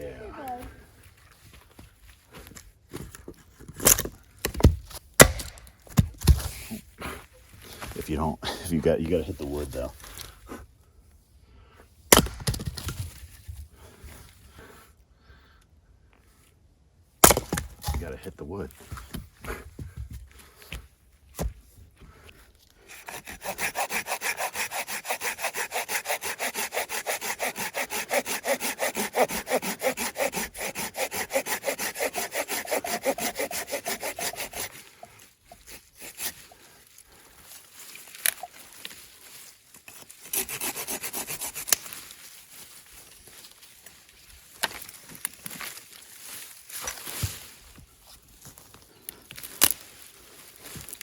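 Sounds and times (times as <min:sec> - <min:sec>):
hand saw cutting wood: 0:22.8 - 0:36.8, 0:38.0 - 0:39.0, 0:39.8 - 0:42.2.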